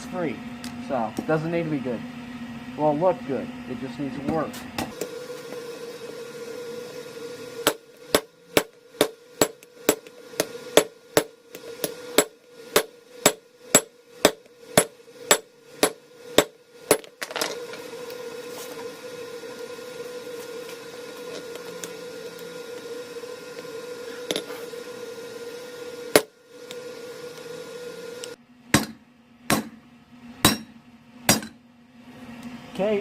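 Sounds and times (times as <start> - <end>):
constant hum: 0.0 - 33.0
hammer striking steel on anvil: 7.6 - 17.1, 28.7 - 29.8, 30.4 - 31.6.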